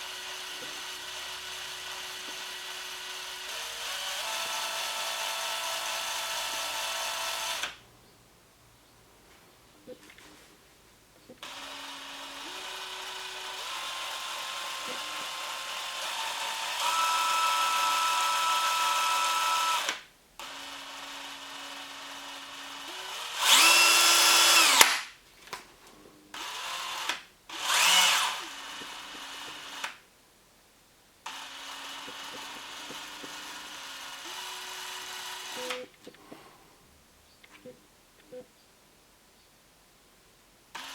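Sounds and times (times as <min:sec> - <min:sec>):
cordless drill whining: 0:00.0 - 0:07.8, 0:11.4 - 0:25.1, 0:26.3 - 0:30.0, 0:31.2 - 0:36.4.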